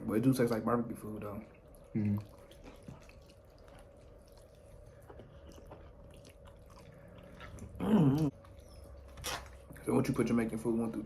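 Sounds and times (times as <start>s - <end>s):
faint steady hum: 0.0s - 11.0s
quiet chewing: 1.2s - 9.9s.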